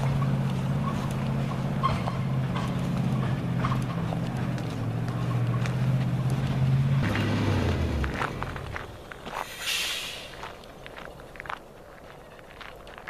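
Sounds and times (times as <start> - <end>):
engine running with light clatter: 0.0 - 9.6.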